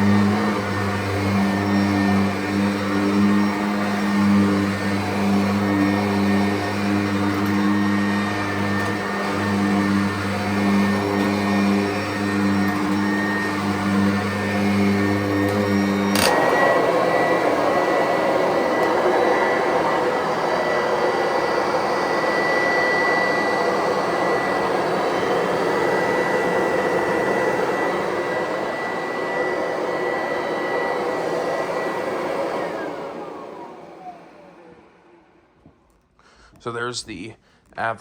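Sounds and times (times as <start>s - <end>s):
vacuum cleaner motor whining: 0.0s - 35.8s.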